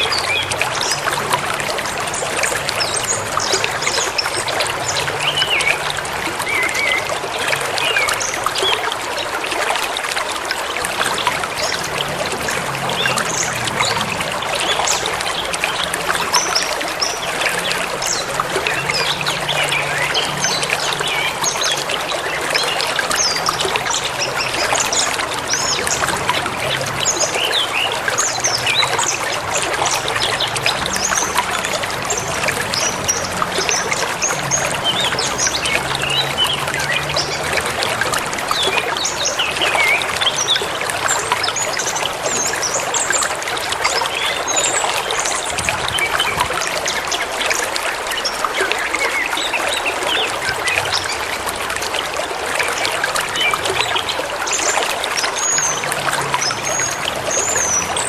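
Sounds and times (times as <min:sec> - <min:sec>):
river water rushing: 0:00.0 - 0:58.0.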